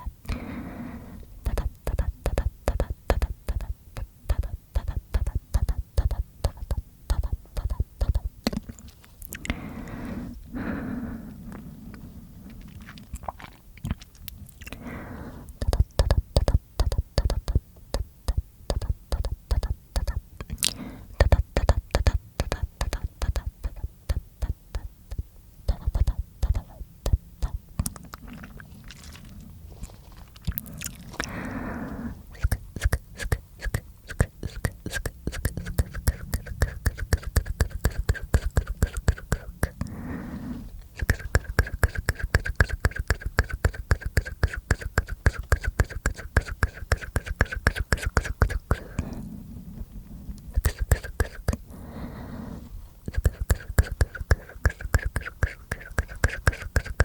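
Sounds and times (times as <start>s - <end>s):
soft low hum: 0.0s - 57.0s
wet mouth clicks and pops: 1.4s - 9.6s, 12.8s - 14.8s, 15.5s - 29.1s, 32.3s - 39.9s, 40.9s - 49.1s, 50.5s - 51.6s, 53.1s - 57.0s.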